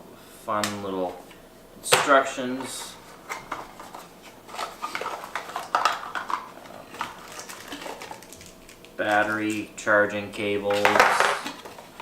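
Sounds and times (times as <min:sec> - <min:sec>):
paper and plastic crinkling: 0:02.6 - 0:09.7, 0:10.7 - 0:12.0.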